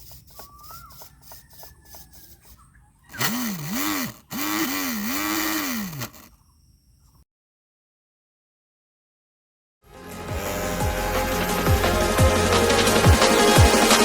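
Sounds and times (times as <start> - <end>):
bird chirp: 0.0 - 3.4, 6.2 - 7.2
electric motor whining: 0.0 - 6.4.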